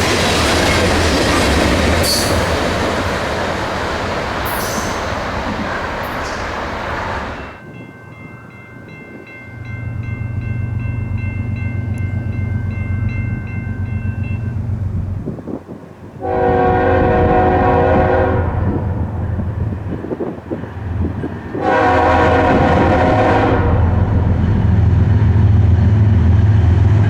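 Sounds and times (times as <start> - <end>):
diesel locomotive rumble: 0.0 - 7.6, 9.6 - 27.0
rail noise: 0.0 - 27.0
bell dinging: 7.6 - 14.6
locomotive air horn: 16.2 - 19.0, 21.6 - 24.3.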